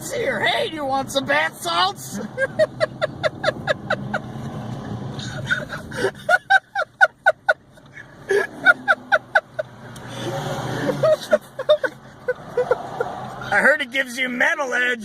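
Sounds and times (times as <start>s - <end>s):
car engine and road hum: 0.0s - 15.0s
person laughing breathlessly: 5.1s - 13.0s.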